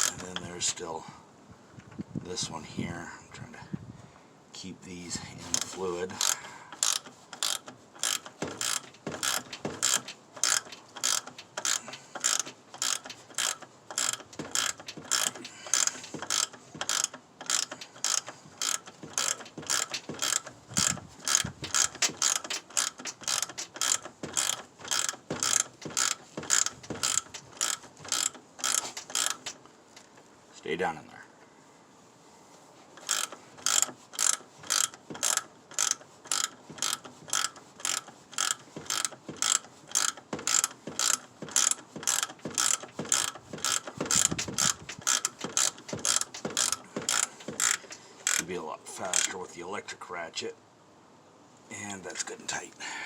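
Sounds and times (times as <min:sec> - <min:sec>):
ratchet wrench pawl clicking: 0:05.5 - 0:29.6, 0:33.0 - 0:48.5, 0:49.1 - 0:49.4.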